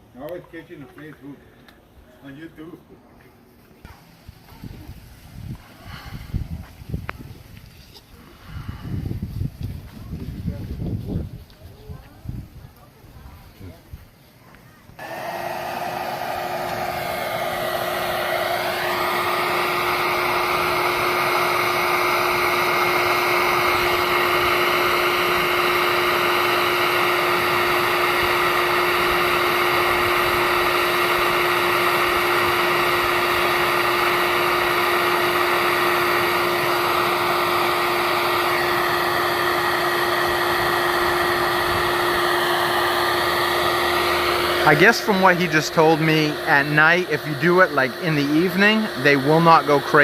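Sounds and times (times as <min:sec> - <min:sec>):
vacuum motor whining: 0:15.0 - 0:50.0.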